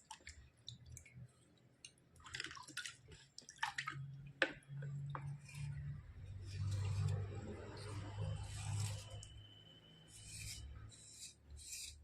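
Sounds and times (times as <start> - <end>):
slate pencils scraping: 5.2 - 9.4, 10.1 - 12.0.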